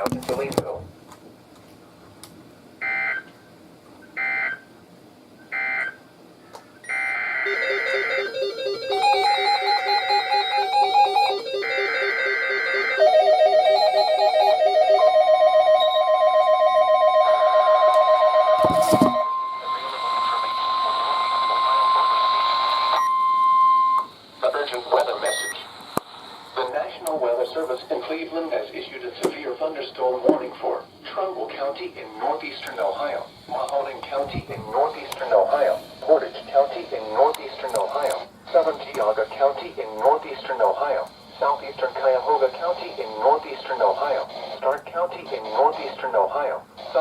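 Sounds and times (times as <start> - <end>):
steady warning alarm tone: 2.8 - 3.3, 4.2 - 4.7, 5.5 - 6.0, 6.8 - 24.2, 25.2 - 25.6
overlapping pulsing alarm beeps: 5.5 - 6.0, 6.8 - 24.1, 25.2 - 25.6
digital tone bursts: 6.8 - 18.5.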